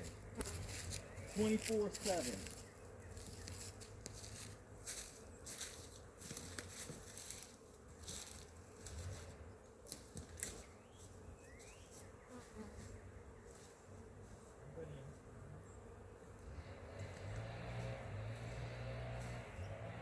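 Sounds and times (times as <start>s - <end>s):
light crackles and rustles: 0.0s - 10.7s
bees buzzing: 0.0s - 20.0s.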